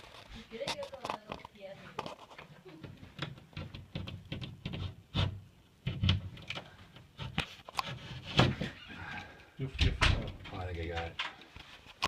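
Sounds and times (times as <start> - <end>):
drywall taps and scrapes: 2.0 - 8.8.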